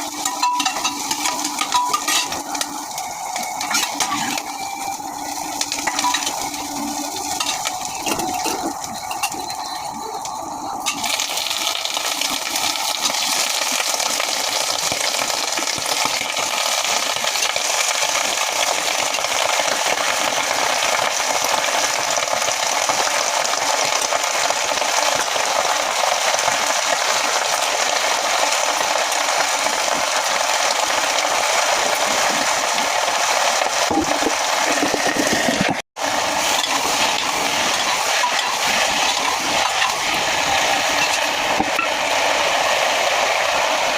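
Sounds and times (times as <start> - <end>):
food sizzling in a pan: 0.0 - 43.9.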